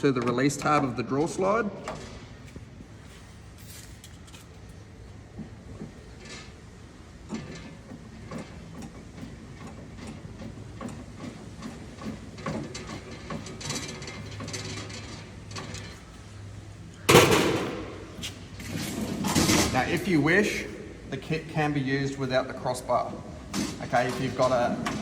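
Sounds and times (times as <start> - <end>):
loud clunk: 17.1 - 19.8.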